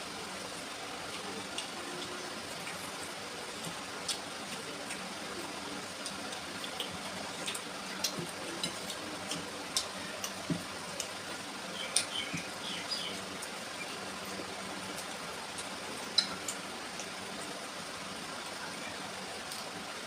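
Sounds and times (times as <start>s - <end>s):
mouth chewing and smacking: 5.8s - 11.2s.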